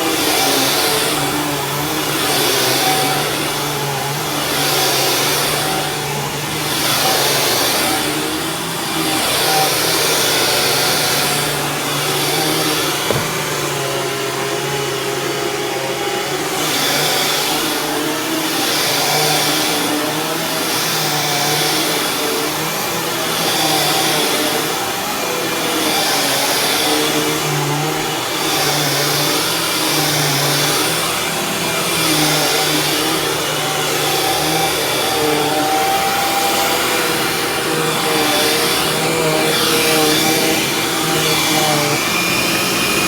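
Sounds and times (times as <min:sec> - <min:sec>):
upright vacuum cleaner running: 0:00.0 - 0:43.0.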